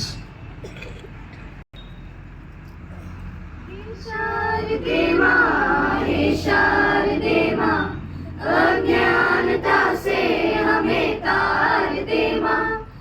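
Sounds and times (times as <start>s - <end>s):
children's choir singing in unison: 4.0s - 13.0s.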